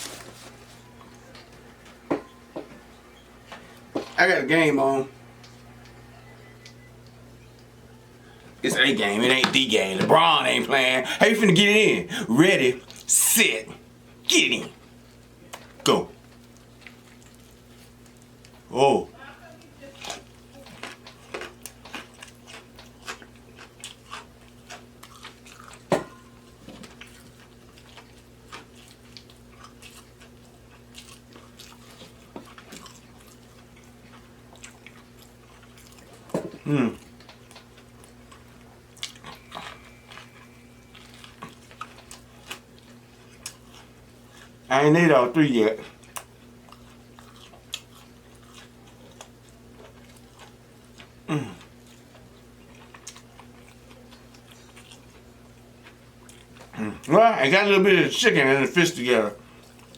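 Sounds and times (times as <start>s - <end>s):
wet chewing and lip-smacking: 15.0s - 18.7s, 19.6s - 44.7s, 45.8s - 57.1s, 59.4s - 59.9s
person humming mm: 36.6s - 37.0s, 51.3s - 51.6s.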